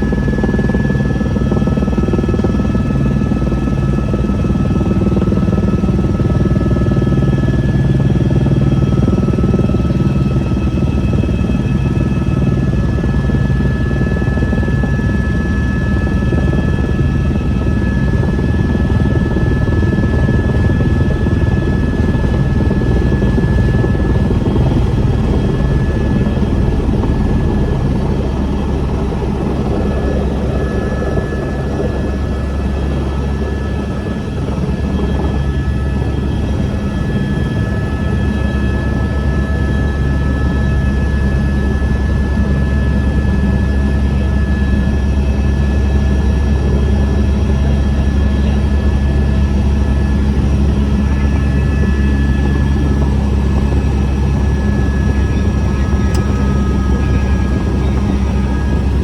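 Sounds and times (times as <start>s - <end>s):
helicopter rotor rumble: 0.0s - 59.0s
high whine: 16.4s - 37.3s, 52.8s - 59.0s.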